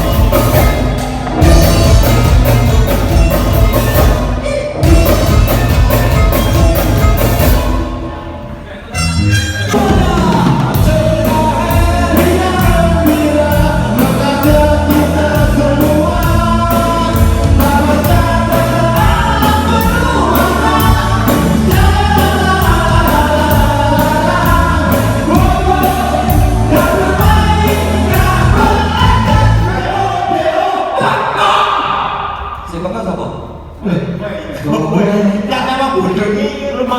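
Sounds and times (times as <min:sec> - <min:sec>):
band playing: 0:00.0 - 0:34.2
several voices singing together: 0:17.8 - 0:32.2.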